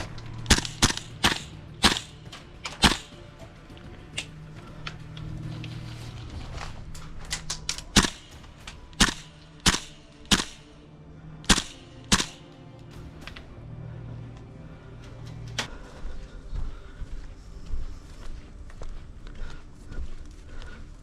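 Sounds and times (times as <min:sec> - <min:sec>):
airsoft rifle shots: 0:00.4 - 0:03.3, 0:07.7 - 0:10.8, 0:11.4 - 0:12.6
distant gunshots: 0:00.5 - 0:03.3, 0:07.8 - 0:10.8, 0:11.5 - 0:12.5.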